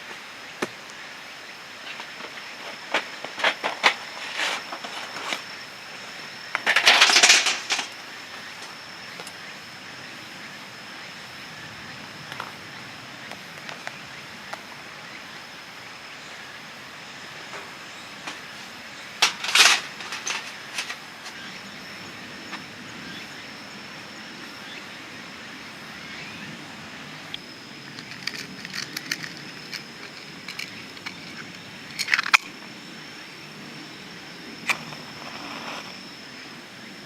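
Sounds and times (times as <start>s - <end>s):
high insect trill: 0.0s - 37.0s
camp gear clinking and clattering: 1.9s - 5.6s, 6.5s - 8.0s, 17.5s - 21.4s, 27.8s - 32.5s.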